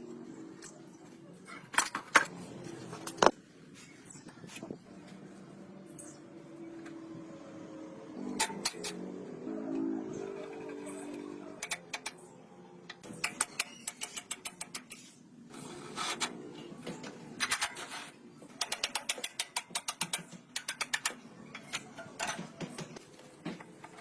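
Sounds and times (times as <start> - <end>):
hand tools clicking and tapping: 11.5 - 12.2, 12.9 - 15.0, 18.5 - 24.0.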